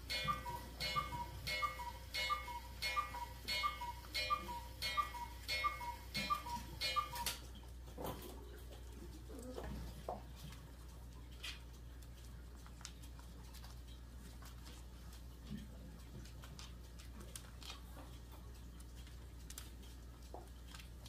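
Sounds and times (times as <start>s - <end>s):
rhythmic mechanical ticking: 0.0s - 7.5s.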